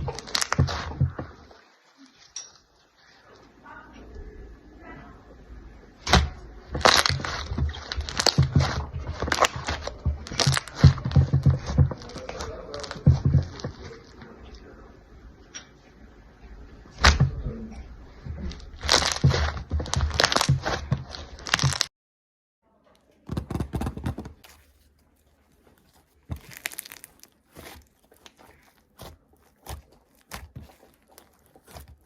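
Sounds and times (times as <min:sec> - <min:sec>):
slime crackling and popping: 0:00.0 - 0:01.5, 0:06.0 - 0:14.2, 0:18.5 - 0:21.9, 0:23.8 - 0:32.0.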